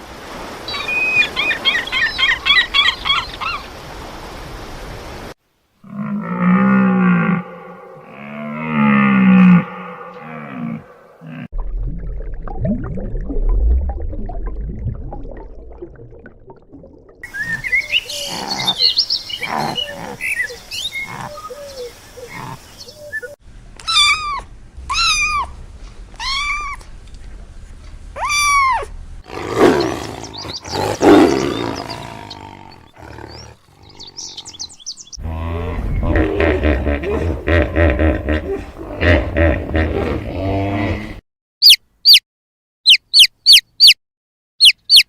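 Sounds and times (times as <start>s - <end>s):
low rumbling animal calls: 5.8s - 11.5s, 17.4s - 26.8s, 28.2s - 41.2s
rough low roar-like calls: 5.8s - 11.5s, 29.3s - 41.2s
animal squeaks and chirps: 23.8s - 25.5s, 26.2s - 26.8s, 41.6s - 42.2s, 42.9s - 44.0s, 44.6s - 45.0s
arching high animal calls: 29.3s - 41.0s.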